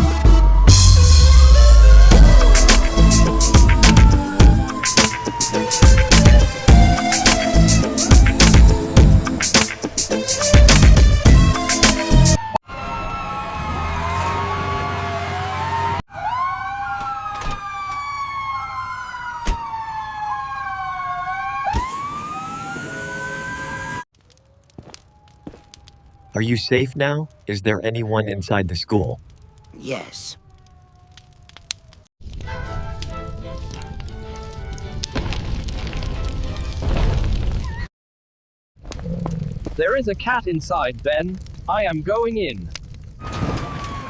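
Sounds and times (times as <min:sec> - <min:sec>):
heavy low boom: 0:00.0 - 0:04.7
fire engine siren wailing: 0:00.0 - 0:09.5, 0:10.2 - 0:27.6, 0:29.2 - 0:35.1, 0:43.2 - 0:44.0
soundtrack music: 0:00.0 - 0:12.5.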